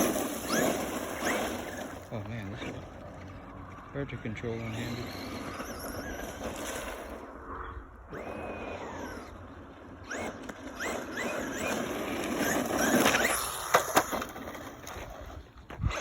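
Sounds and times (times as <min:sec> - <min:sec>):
tyres rushing over ground: 0:00.0 - 0:07.3, 0:08.1 - 0:16.0
electric motor whining: 0:00.0 - 0:16.0.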